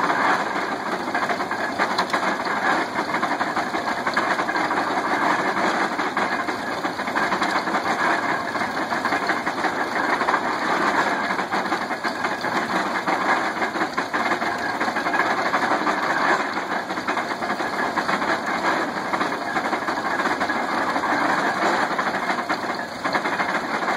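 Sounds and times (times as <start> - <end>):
hay press mechanical clatter: 0.0 - 23.9
tractor engine running: 0.0 - 23.9.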